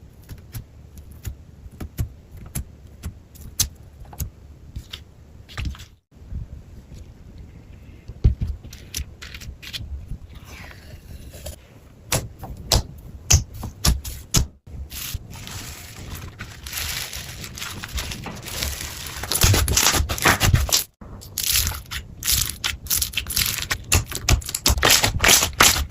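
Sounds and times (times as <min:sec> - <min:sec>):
slime crackling and squishing: 0:14.9 - 0:25.9.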